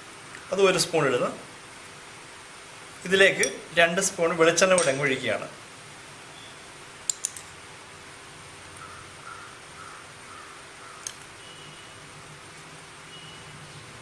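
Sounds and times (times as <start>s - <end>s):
metal utensils clinking: 4.7s - 5.2s.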